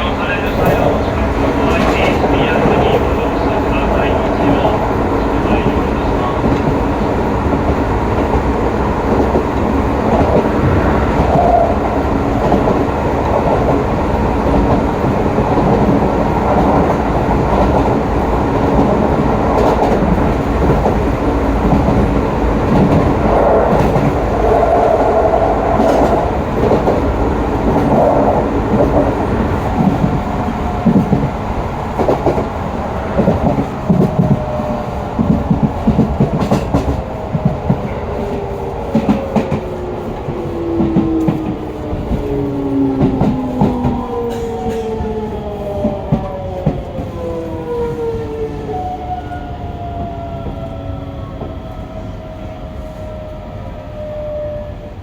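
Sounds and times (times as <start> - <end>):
train wheels rumbling on rail: 0.0 - 55.0.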